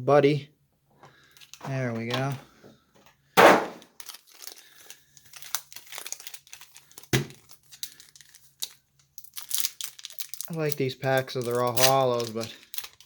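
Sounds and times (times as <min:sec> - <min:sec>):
foil wrapper crinkling and tearing: 0:01.2 - 0:01.6, 0:03.9 - 0:13.0.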